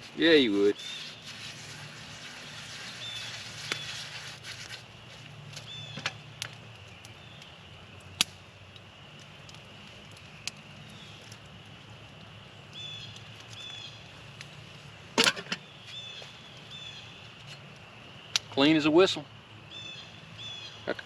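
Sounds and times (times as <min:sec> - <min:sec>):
bird chirping: 0:00.7 - 0:01.4, 0:05.6 - 0:07.7, 0:12.5 - 0:14.2, 0:15.6 - 0:18.7, 0:19.6 - 0:21.0.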